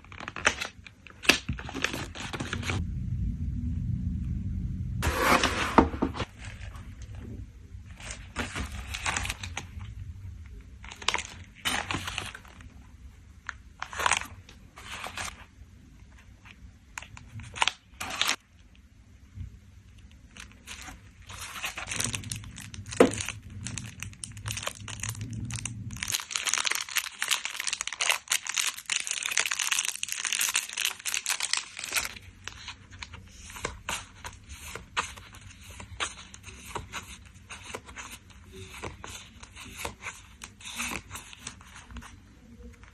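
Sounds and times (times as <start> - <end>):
plastic packaging crinkling: 0.0 - 2.8, 7.9 - 9.9, 10.5 - 12.8, 13.4 - 15.4, 16.4 - 18.7, 20.0 - 42.9.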